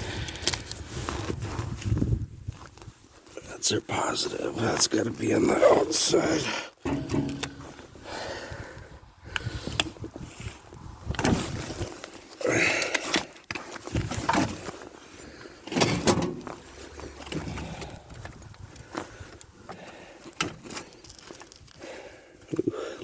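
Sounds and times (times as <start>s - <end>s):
battery clunking and scraping: 6.8s - 8.0s, 12.9s - 14.8s, 15.6s - 21.8s.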